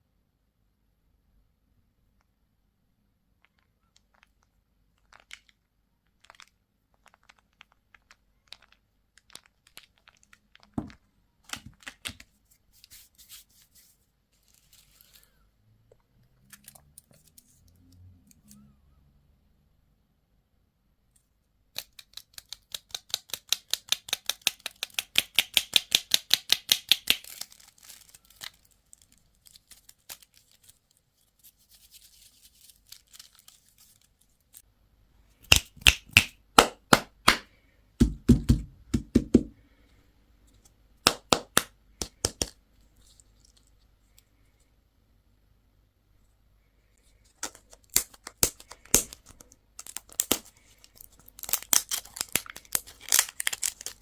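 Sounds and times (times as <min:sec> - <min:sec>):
packaging clicks: 0:47.4 - 0:54.0.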